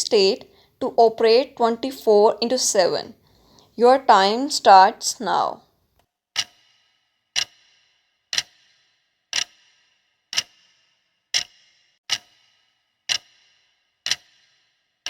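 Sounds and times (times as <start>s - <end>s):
clock ticking: 0.0s - 5.6s, 6.4s - 6.6s, 7.4s - 7.6s, 8.3s - 8.6s, 9.3s - 9.6s, 13.1s - 13.3s, 14.1s - 14.3s.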